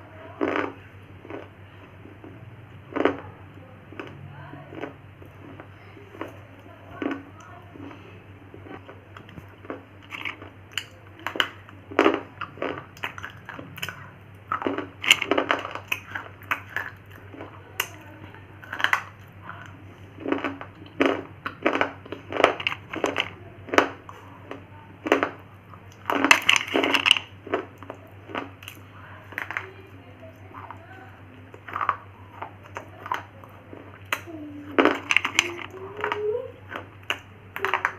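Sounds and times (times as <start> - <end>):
pencils crunched between teeth: 8.7 - 18.0, 18.6 - 23.9, 25.9 - 29.8, 31.5 - 37.9.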